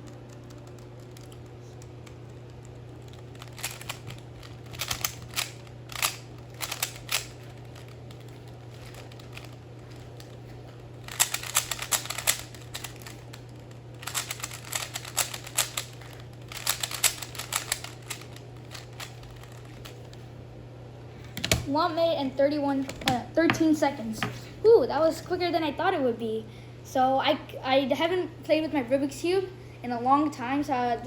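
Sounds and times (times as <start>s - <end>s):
puzzle cube layers clicking: 11.1s - 13.2s, 14.0s - 20.0s.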